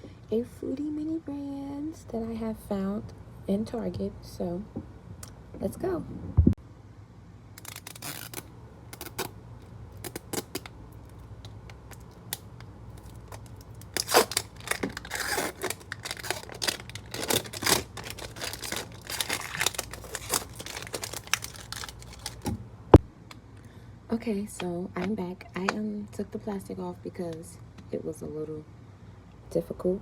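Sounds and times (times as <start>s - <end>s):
plastic wrap crinkling and tearing: 7.6s - 9.3s, 9.9s - 22.6s.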